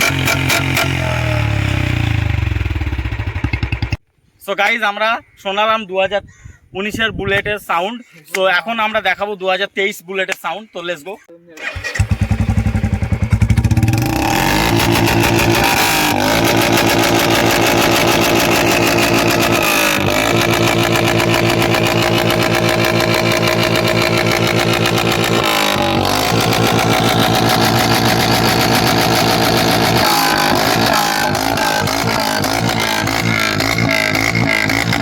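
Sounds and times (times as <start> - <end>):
motorcycle engine idling: 0.1 - 4.0, 12.0 - 35.0.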